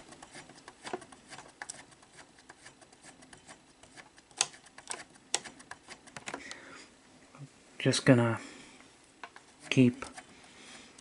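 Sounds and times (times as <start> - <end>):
plastic gears clicking: 0.0 - 6.5.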